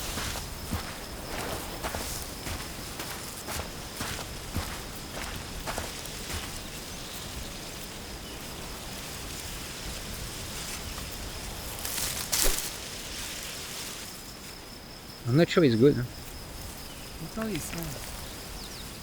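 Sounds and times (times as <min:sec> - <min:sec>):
soft footsteps: 0:00.0 - 0:07.3
rustle: 0:00.0 - 0:15.2, 0:16.1 - 0:19.0
faint steady hiss: 0:00.0 - 0:19.0
high insect-like tone: 0:00.0 - 0:19.0.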